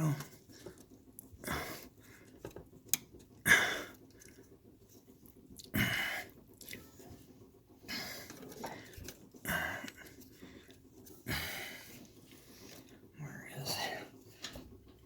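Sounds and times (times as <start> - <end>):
man breathing heavily: 0.0 - 2.5, 3.4 - 4.5, 5.7 - 6.4, 7.8 - 14.2.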